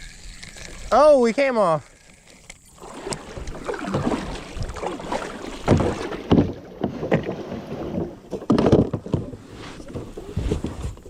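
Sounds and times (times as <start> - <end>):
water sloshing around kayak hull: 0.0 - 11.0
dull knocks on kayak: 5.6 - 9.3.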